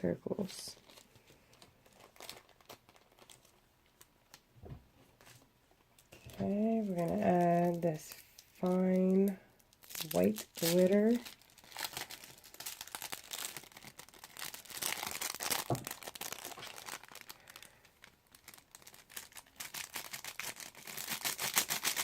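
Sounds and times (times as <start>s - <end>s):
plastic packaging crinkling: 0.0s - 4.5s, 5.2s - 22.0s.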